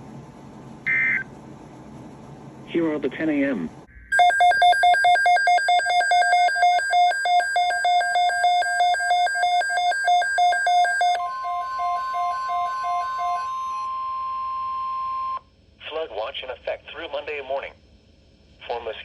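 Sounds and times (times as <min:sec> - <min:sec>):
rapid electronic beeping: 0:04.1 - 0:13.9
steady warning alarm tone: 0:04.1 - 0:15.4.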